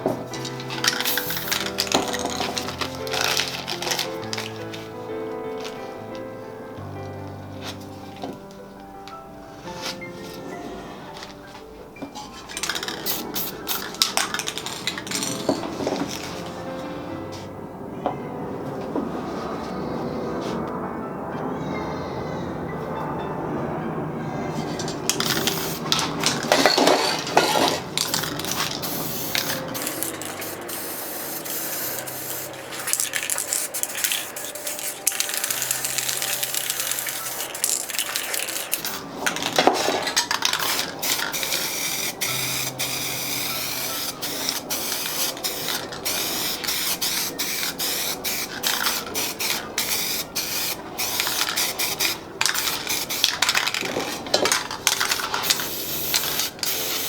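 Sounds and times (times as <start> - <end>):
aerosol spray can hissing: 0.0 - 5.0, 12.5 - 16.6, 25.1 - 57.0
clicks and taps of cans: 0.3 - 4.7, 12.4 - 16.3, 32.8 - 42.4, 44.2 - 57.0.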